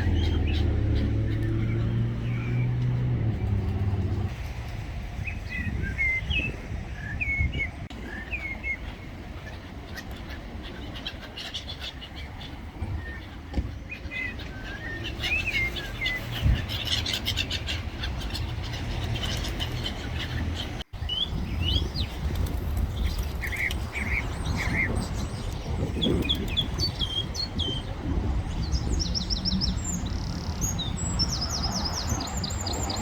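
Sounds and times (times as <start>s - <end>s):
small birds chirping: 0.0s - 4.4s, 5.2s - 33.0s.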